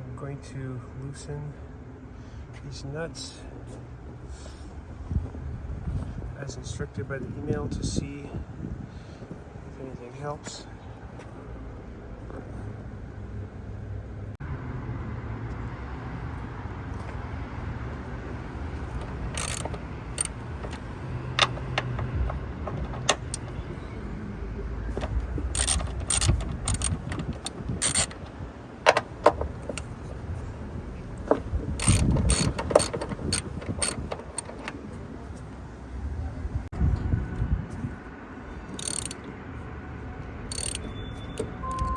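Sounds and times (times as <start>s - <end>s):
ratchet wrench clicking: 18.8s - 20.8s, 22.8s - 23.6s, 25.0s - 28.3s, 31.3s - 34.6s, 38.8s - 39.3s, 40.5s - 41.9s.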